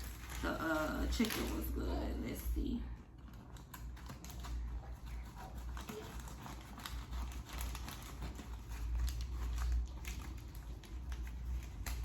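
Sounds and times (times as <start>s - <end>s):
sandwich packaging rustling: 0.0s - 12.0s.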